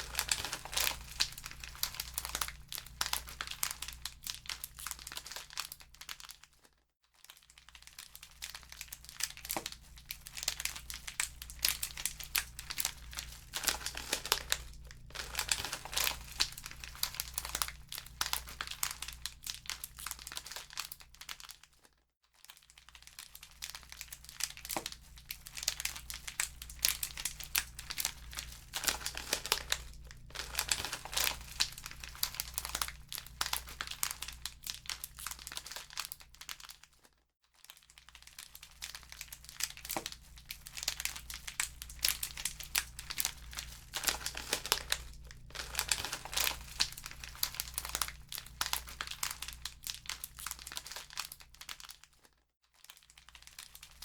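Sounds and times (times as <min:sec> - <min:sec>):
wood fire crackling: 0:00.0 - 0:03.6, 0:11.2 - 0:18.8, 0:25.8 - 0:34.9, 0:40.7 - 0:49.7.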